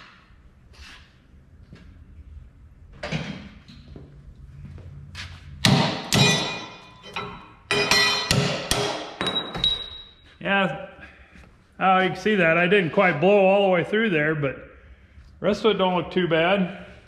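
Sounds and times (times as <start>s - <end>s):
metal angle iron clanking: 6.1s - 10.1s.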